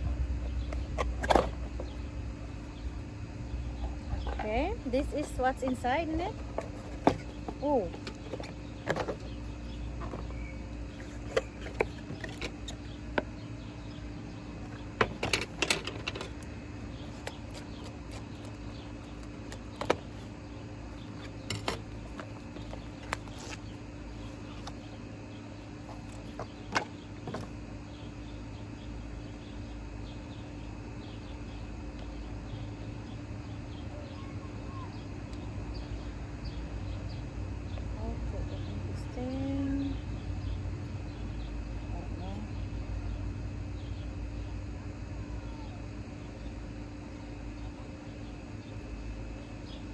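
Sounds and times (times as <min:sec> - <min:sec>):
steady low hum: 0:00.0 - 0:49.9
package being handled and opened: 0:00.1 - 0:13.0, 0:14.7 - 0:24.9.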